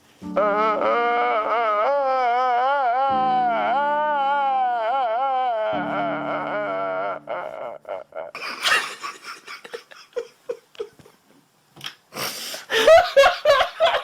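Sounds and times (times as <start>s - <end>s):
high voice wailing: 0.4s - 8.4s.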